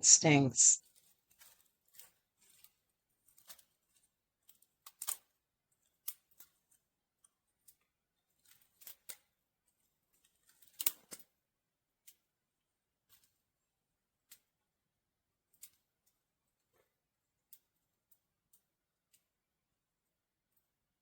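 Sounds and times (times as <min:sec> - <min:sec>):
small branches snapping: 0:01.0 - 0:06.5, 0:08.4 - 0:09.3, 0:10.3 - 0:11.3.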